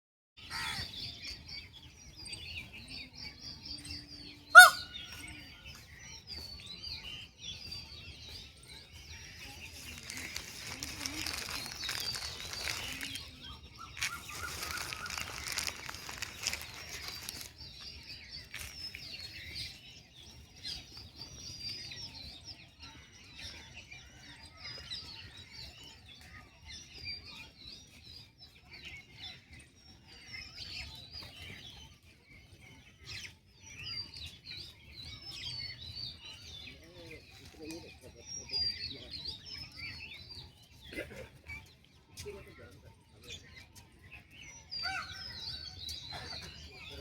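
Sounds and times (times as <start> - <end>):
small birds chirping: 0.4 - 47.0
loud rustling: 9.7 - 13.3, 14.0 - 17.6, 18.5 - 18.9.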